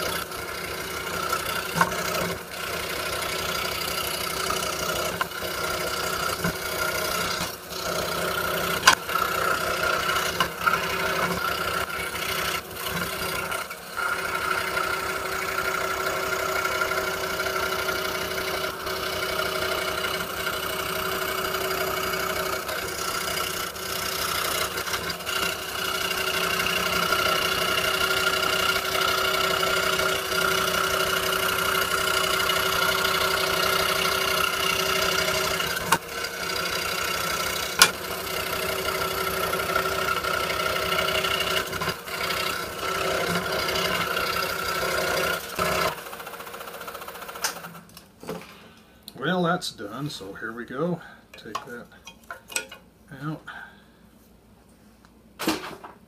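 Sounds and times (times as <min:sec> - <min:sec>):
scroll saw cutting plywood: 0:00.0 - 0:47.9.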